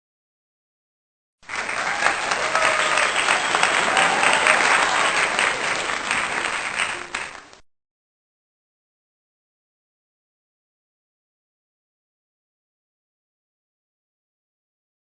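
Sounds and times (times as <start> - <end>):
crowd applause: 1.4 - 7.6.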